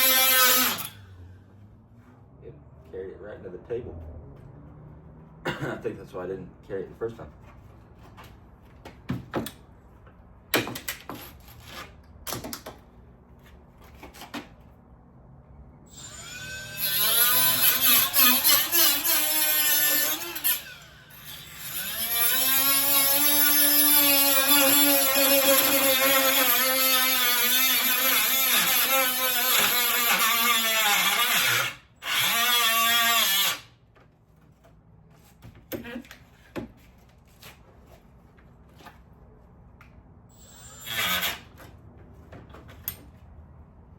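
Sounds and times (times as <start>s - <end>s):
power tool cutting metal panel: 0.0s - 1.0s, 15.9s - 33.7s, 40.3s - 41.5s.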